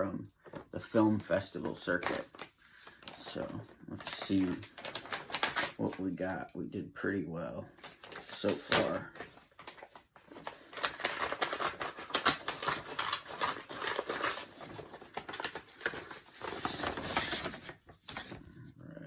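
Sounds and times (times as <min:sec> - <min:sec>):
packaging crackling and tearing: 0:01.8 - 0:06.0, 0:07.8 - 0:18.4.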